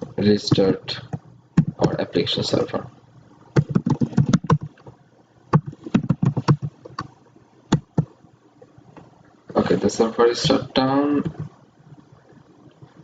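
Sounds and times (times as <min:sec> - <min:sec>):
keyboard typing: 0:00.5 - 0:02.1, 0:03.5 - 0:07.1, 0:07.7 - 0:08.1.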